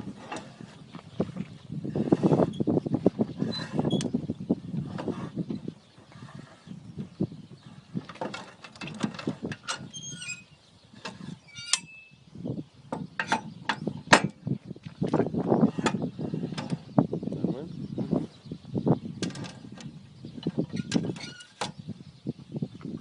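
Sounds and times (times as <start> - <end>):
metal clanks and scraping: 0.0 - 2.7, 3.4 - 4.1, 4.8 - 5.4, 7.6 - 12.1, 12.9 - 14.4, 15.6 - 16.9, 19.2 - 21.8
ringing metal: 11.5 - 12.2.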